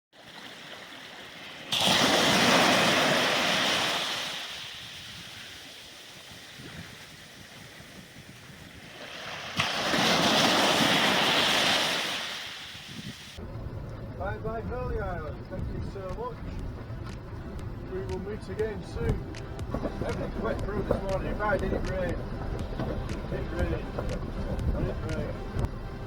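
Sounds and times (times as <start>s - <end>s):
sea waves surging: 0.2s - 13.4s, 16.0s - 26.0s.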